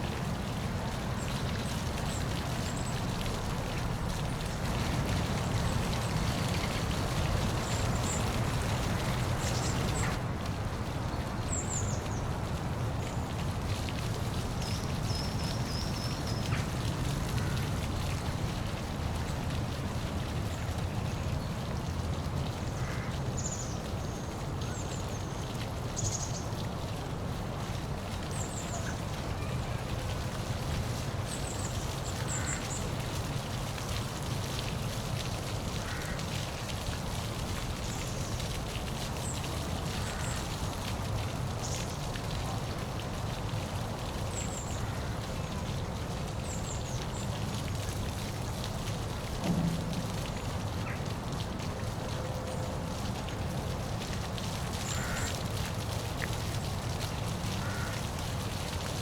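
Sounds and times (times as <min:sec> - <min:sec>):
waterfall rushing: 0:02.7 - 0:10.4, 0:48.7 - 0:52.5
low thump: 0:49.4 - 0:50.8.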